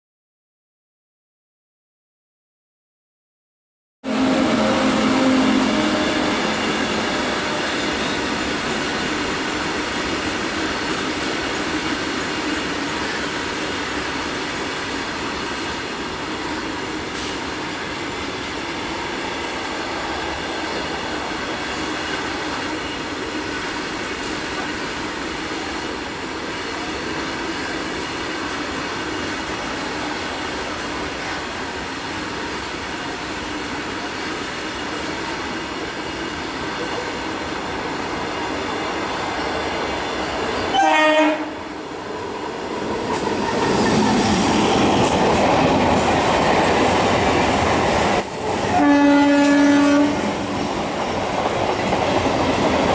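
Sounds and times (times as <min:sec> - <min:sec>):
train wheels rumbling on track: 0:04.1 - 0:52.9.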